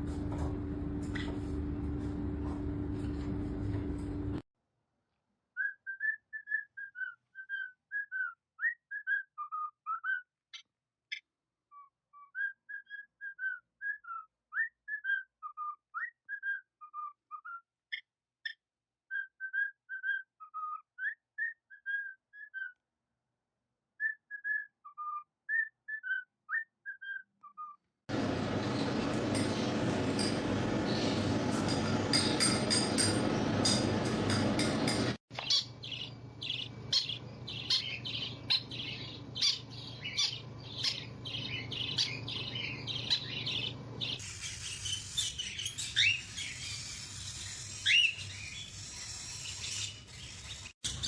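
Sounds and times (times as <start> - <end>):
steady hum: 28.1 - 35.2.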